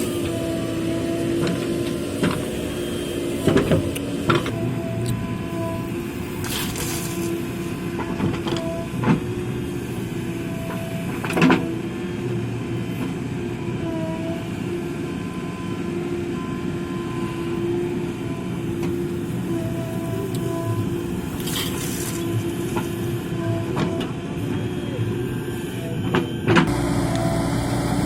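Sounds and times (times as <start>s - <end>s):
diesel engine humming: 0.0s - 28.0s.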